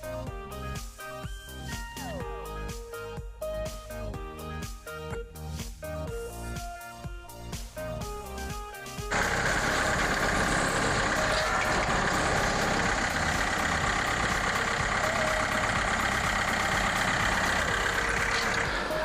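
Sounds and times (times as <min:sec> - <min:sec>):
music: 0:00.0 - 0:19.0
engine running steadily: 0:09.1 - 0:19.0.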